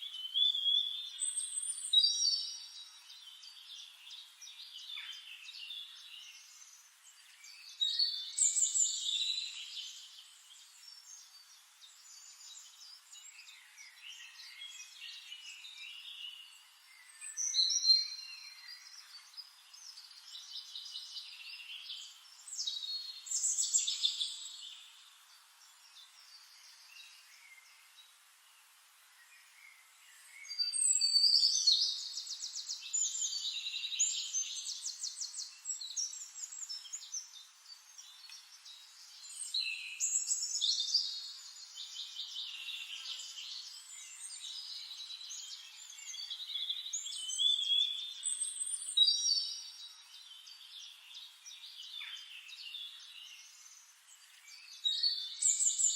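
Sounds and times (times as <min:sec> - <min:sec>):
songbirds singing and chirping: 0:00.0 - 0:55.9.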